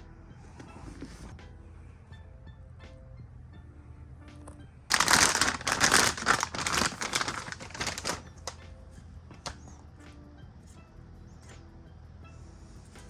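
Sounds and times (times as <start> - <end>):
quiet background music: 0.0 - 13.0
packaging crinkling and rustling: 4.9 - 8.6.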